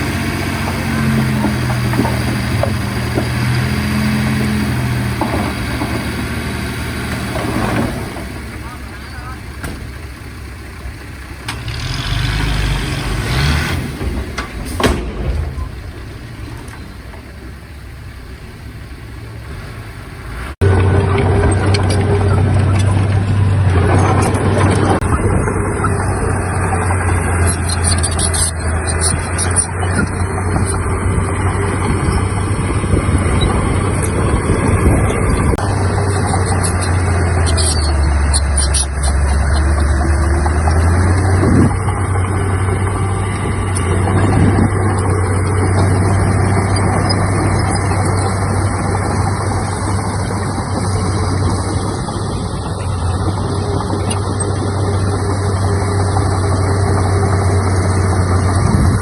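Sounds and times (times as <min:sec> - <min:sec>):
diesel machinery engine drone: 0:00.0 - 0:59.0
sharp metal clanks: 0:12.8 - 0:17.7.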